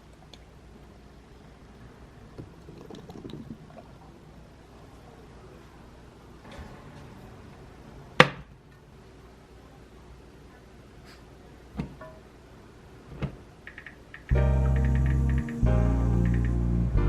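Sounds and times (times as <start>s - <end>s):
faint clicks: 13.6s - 16.6s.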